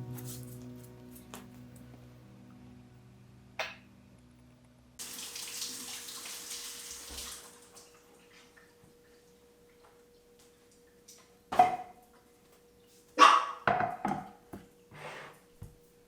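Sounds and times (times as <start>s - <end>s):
tap water running: 5.0s - 9.1s.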